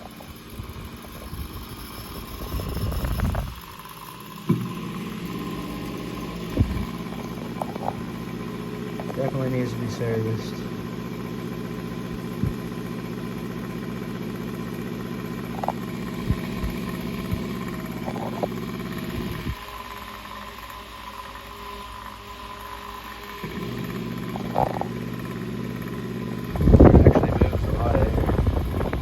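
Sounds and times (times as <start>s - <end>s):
table fan humming: 0.0s - 29.0s
light knocks from fan: 4.5s - 4.8s.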